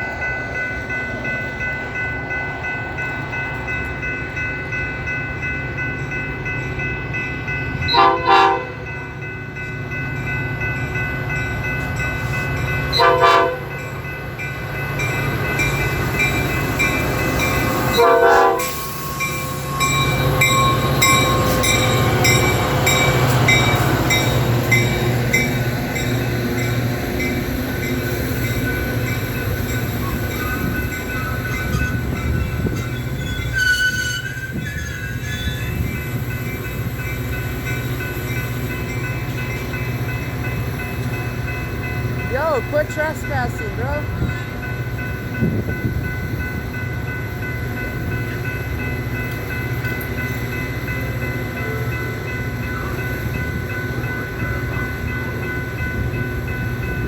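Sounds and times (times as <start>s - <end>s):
diesel engine rumble of passing train: 0.0s - 57.0s
locomotive horn blasts: 7.9s - 8.8s, 12.9s - 13.8s, 17.8s - 21.6s.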